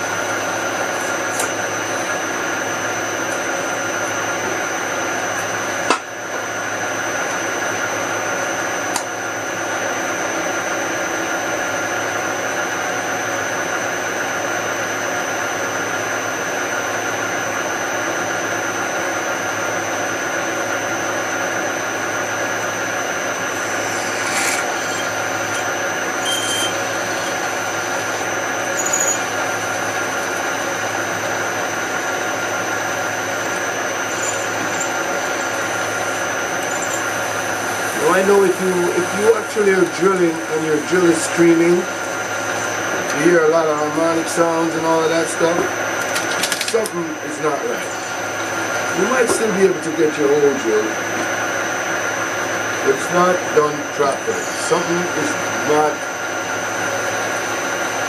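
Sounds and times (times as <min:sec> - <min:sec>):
drill press drilling metal: 0:19.8 - 0:51.2, 0:52.4 - 0:58.0.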